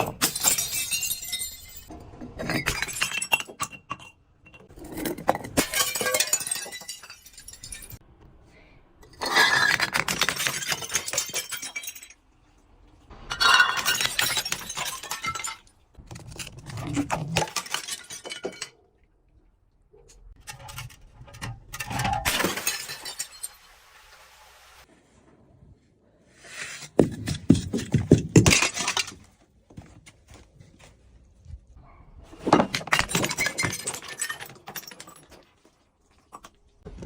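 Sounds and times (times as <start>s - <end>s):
glass bottles breaking: 0.0s - 8.0s, 9.2s - 12.2s, 13.3s - 18.8s, 21.8s - 23.8s, 27.0s - 29.2s, 32.4s - 35.6s.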